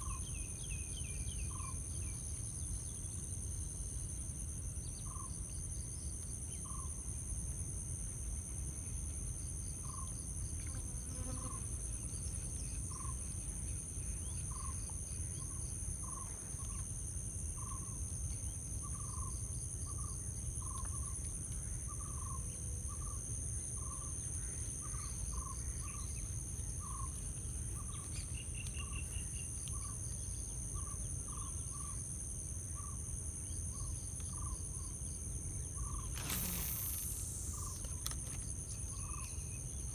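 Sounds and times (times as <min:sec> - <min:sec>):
crickets trilling: 0:24.2 - 0:39.9.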